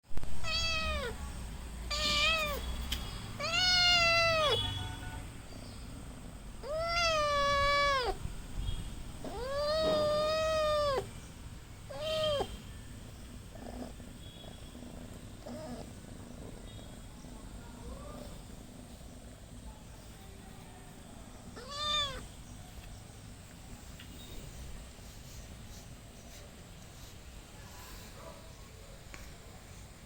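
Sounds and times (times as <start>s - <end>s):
kitten meowing: 0.4s - 1.2s, 1.9s - 2.6s, 3.4s - 4.6s, 6.6s - 8.2s, 9.2s - 11.1s, 11.9s - 12.5s, 21.6s - 22.3s.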